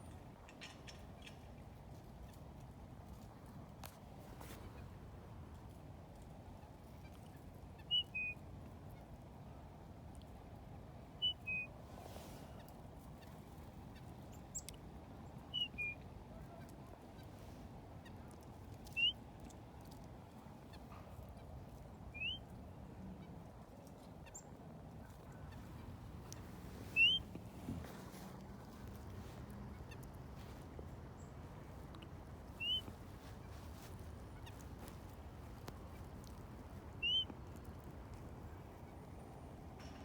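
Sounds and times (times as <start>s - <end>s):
bird high call notes: 26.8s - 27.3s, 32.6s - 32.9s, 37.0s - 37.3s.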